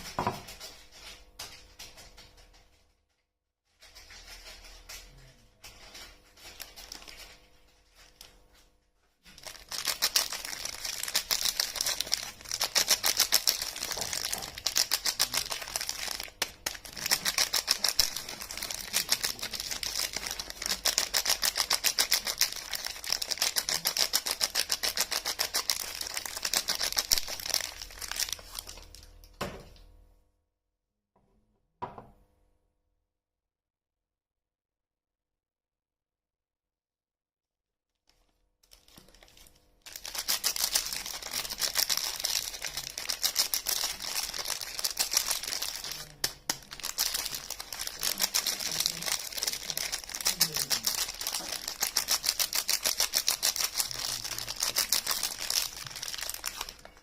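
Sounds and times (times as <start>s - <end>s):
soap packaging crinkling: 5.6s - 8.4s, 9.3s - 29.2s, 38.1s - 57.0s.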